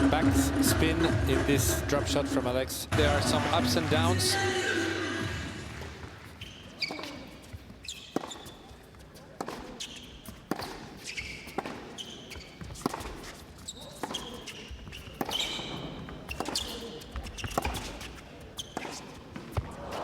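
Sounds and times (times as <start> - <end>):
tennis racket hitting ball: 5.7 - 19.7
shoe squeaks: 6.2 - 19.8.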